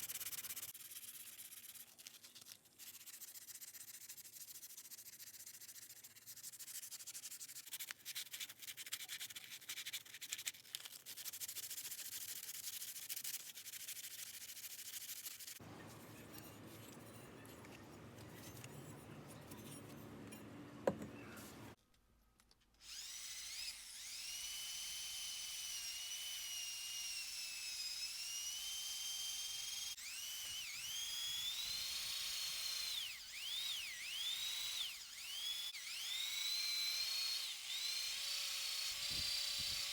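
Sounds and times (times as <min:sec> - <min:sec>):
hand sanding with rasp: 0:00.0 - 0:15.6
small power tool whining: 0:22.8 - 0:39.9.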